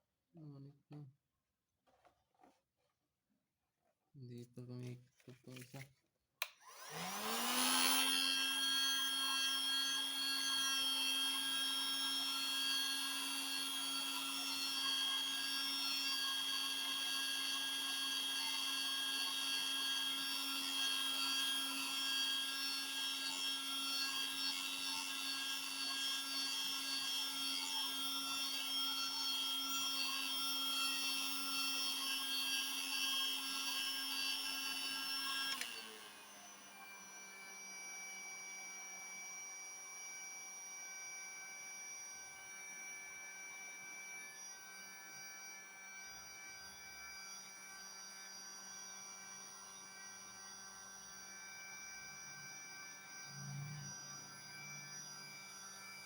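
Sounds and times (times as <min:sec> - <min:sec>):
heat gun fan whining: 0:06.5 - 0:10.0, 0:34.1 - 0:36.5.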